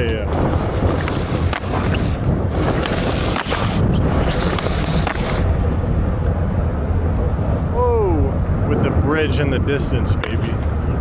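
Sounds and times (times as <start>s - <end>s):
skateboard knocks and clacks: 0.0s - 5.6s
skateboard rolling on concrete: 0.0s - 7.4s, 10.1s - 11.0s
wind buffeting microphone: 0.0s - 11.0s.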